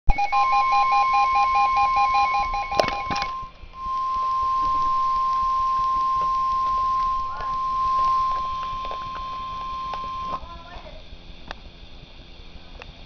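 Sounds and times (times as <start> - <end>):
steady alarm tone: 0.1 - 10.4.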